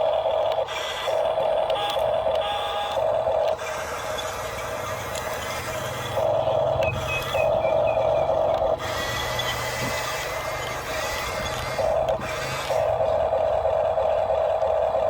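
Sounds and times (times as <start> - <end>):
small electric motors whining: 0.0 - 15.0.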